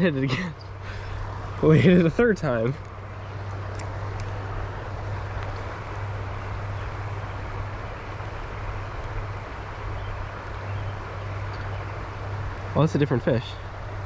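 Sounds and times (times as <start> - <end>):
stream water rushing: 0.0 - 14.0.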